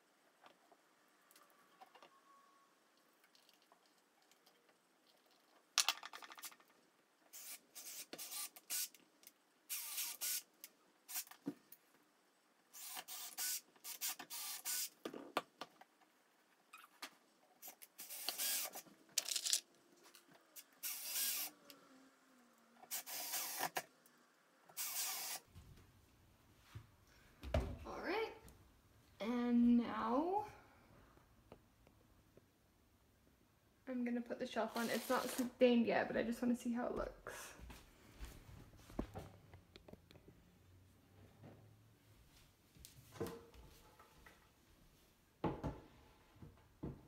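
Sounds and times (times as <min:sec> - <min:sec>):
power drill driving screws: 0:07.3 - 0:09.0, 0:09.7 - 0:10.5, 0:12.8 - 0:15.0, 0:17.6 - 0:18.8, 0:20.6 - 0:21.8, 0:22.8 - 0:23.9, 0:24.7 - 0:25.5.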